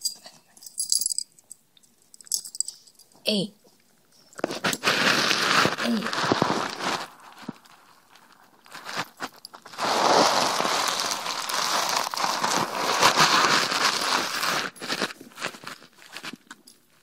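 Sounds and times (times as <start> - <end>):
dog scratching on floor: 4.4 - 7.8.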